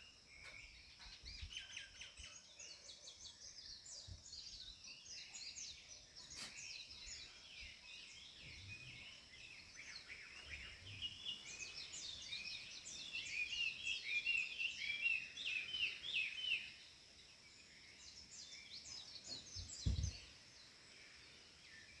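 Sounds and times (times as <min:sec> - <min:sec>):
birds singing and chirping: 0:00.0 - 0:22.0
low thump: 0:19.6 - 0:20.2.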